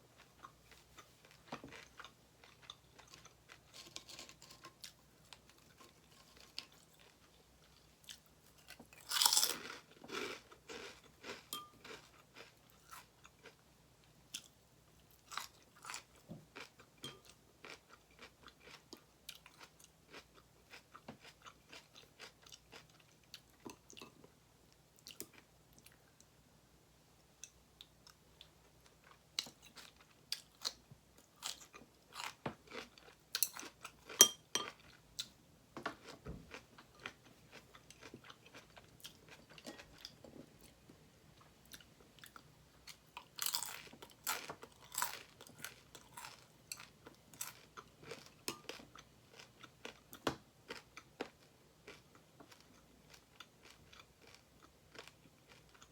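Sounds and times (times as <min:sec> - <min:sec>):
person chewing crunchy food: 0:00.2 - 0:13.6, 0:14.3 - 0:24.3, 0:31.4 - 0:35.4, 0:36.0 - 0:40.8, 0:41.4 - 0:55.9.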